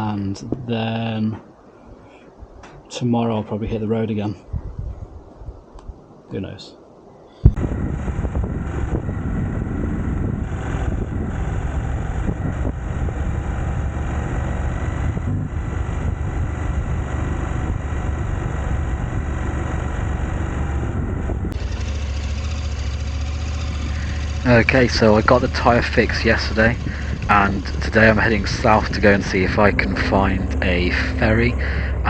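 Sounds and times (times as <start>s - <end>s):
motorcycle engine running: 7.4s - 32.0s.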